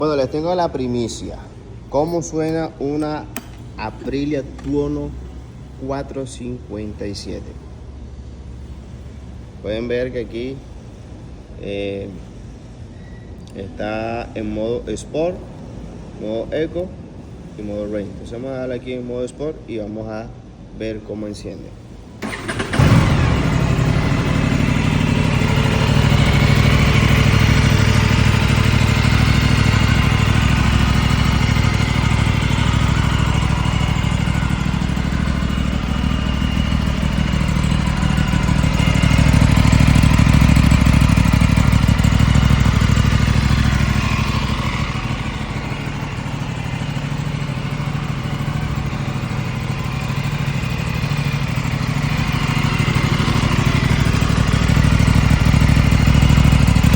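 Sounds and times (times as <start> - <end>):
motorcycle engine starting and idling: 1.9 - 5.8, 22.2 - 56.9.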